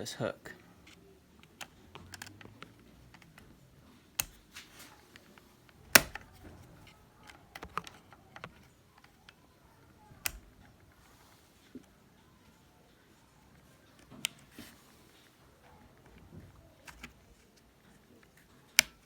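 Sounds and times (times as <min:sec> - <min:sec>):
plastic and metal parts clicking: 0:00.8 - 0:03.5, 0:04.1 - 0:09.4, 0:10.1 - 0:10.8, 0:16.1 - 0:17.6, 0:18.2 - 0:19.0
switch parts snapping: 0:01.4 - 0:03.5, 0:04.2 - 0:04.7, 0:05.8 - 0:09.2, 0:10.2 - 0:10.6, 0:18.7 - 0:19.0.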